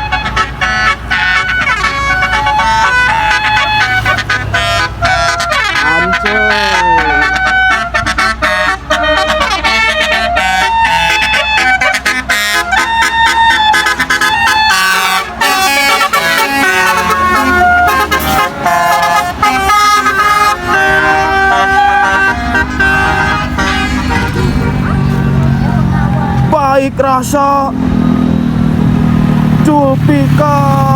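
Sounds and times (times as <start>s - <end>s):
bus musical horns: 0.0s - 29.2s.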